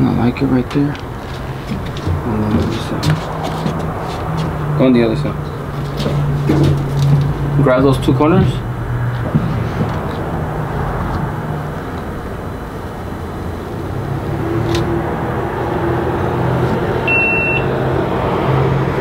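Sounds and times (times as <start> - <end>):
short high beep: 17.1 - 17.7.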